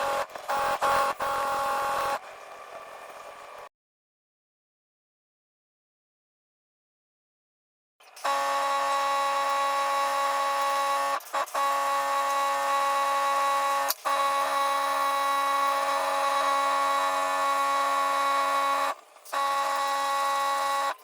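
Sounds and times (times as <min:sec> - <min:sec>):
paint sprayer whining: 0:08.0 - 0:21.0.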